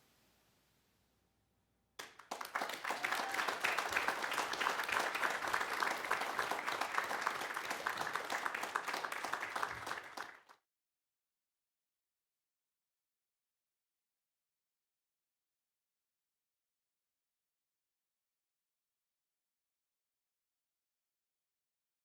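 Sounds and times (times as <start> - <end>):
audience applauding: 2.0 - 10.5.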